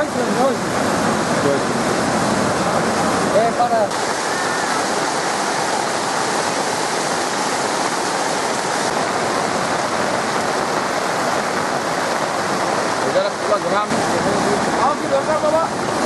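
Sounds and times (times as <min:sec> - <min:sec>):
floodwater rushing: 0:00.0 - 0:16.0.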